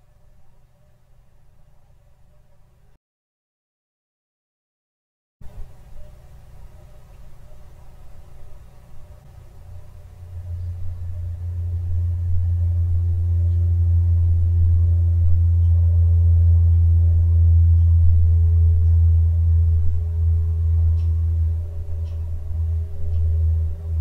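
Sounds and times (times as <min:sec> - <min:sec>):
faint steady tones: 0:05.4 - 0:24.0
low droning hum: 0:05.4 - 0:24.0.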